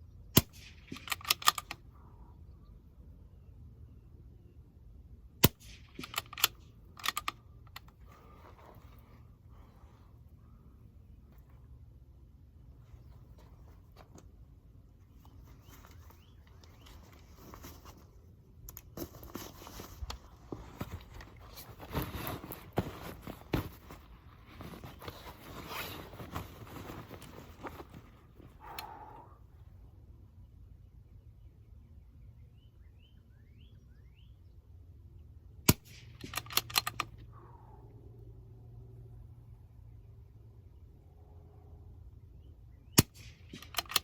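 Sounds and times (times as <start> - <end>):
rifle shot: 0.3 - 1.5, 5.4 - 6.5, 35.7 - 36.9
rifle bolt clicks: 0.4 - 1.8, 5.4 - 8.0, 35.7 - 37.2, 43.0 - 44.0
rustling and scuffing: 15.1 - 18.3, 18.9 - 28.6.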